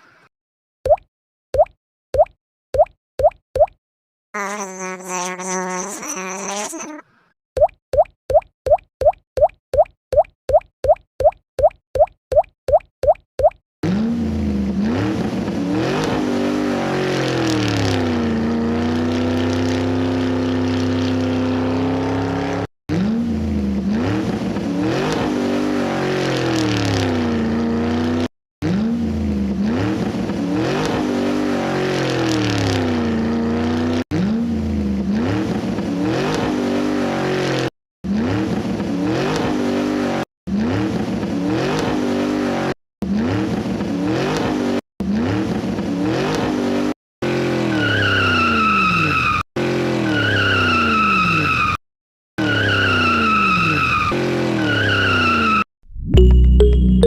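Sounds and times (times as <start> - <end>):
car engine revving: 13.8 - 48.5.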